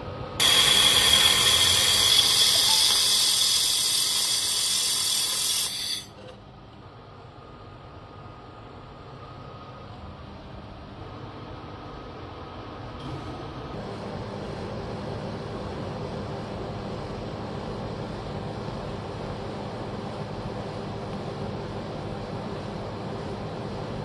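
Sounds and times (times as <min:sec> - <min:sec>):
machinery humming: 0:00.0 - 0:06.2
thin steady whine: 0:00.0 - 0:06.4
workshop machinery humming: 0:00.0 - 0:24.0.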